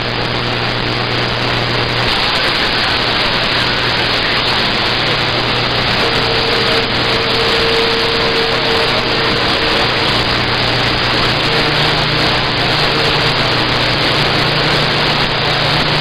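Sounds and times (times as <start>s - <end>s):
radio static hiss: 0.0s - 16.0s
faint steady tone: 5.2s - 16.0s.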